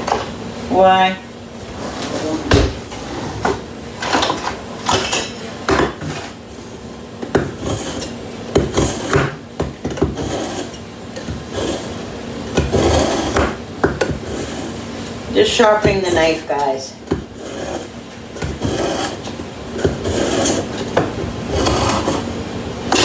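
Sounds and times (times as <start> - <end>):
knife scraping on metal: 7.5 - 9.4, 10.0 - 13.6, 17.3 - 23.0.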